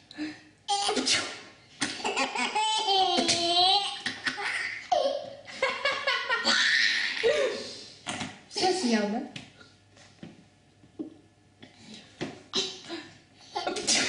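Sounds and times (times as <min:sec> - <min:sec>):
person sneezing: 0:00.8 - 0:01.5, 0:13.7 - 0:14.0
baby laughing: 0:01.8 - 0:07.5.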